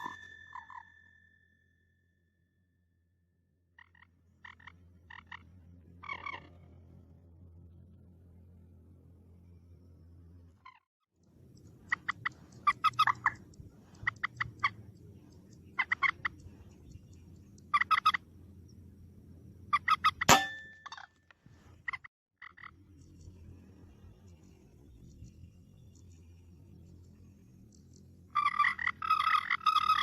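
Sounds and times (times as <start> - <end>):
moorhen clucking calls: 11.6 - 14.9, 15.6 - 16.5, 17.7 - 18.2, 19.7 - 20.3, 28.4 - 30.0.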